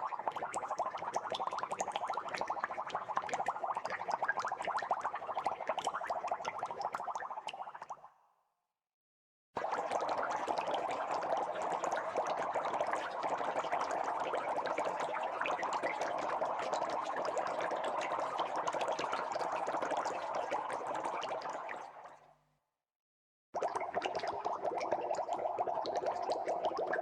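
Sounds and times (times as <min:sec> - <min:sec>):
bubbles fizzing and popping: 0:09.6 - 0:22.2, 0:23.6 - 0:27.0.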